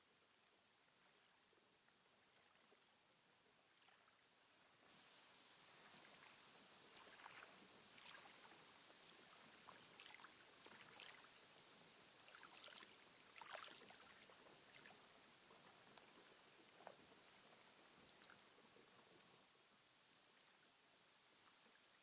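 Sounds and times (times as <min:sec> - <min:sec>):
steady hiss: 0:00.0 - 0:22.0
lake water lapping: 0:05.6 - 0:19.4
small splashes: 0:05.8 - 0:18.7.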